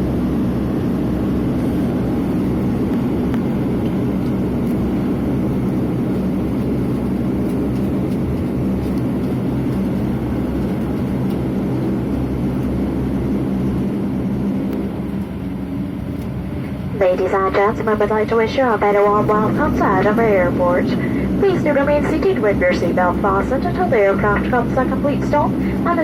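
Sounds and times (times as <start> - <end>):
turboprop engines droning in cabin: 0.0 - 26.0.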